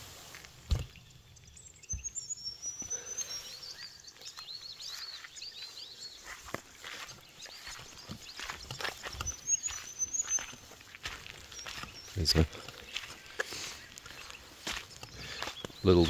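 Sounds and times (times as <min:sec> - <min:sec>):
small birds chirping: 0:00.0 - 0:16.0
knocks and thuds: 0:00.7 - 0:01.0
footsteps: 0:03.8 - 0:16.0.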